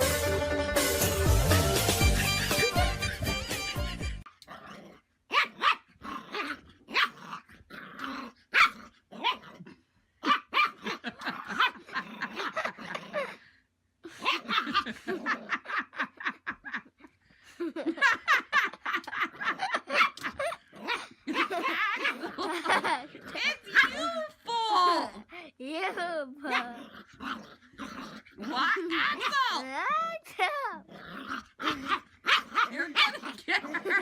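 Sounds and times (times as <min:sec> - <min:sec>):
music: 0:00.0 - 0:04.2
dog barking and growling: 0:04.3 - 0:13.4, 0:14.1 - 0:16.4, 0:18.8 - 0:34.0.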